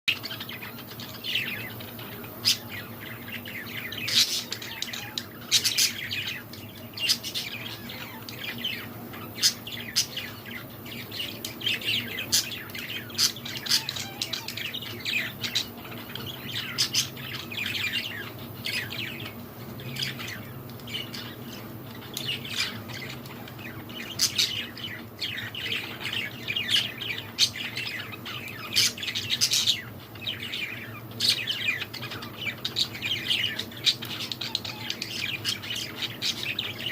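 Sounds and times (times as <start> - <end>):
finches chirping: 0.1 - 36.9.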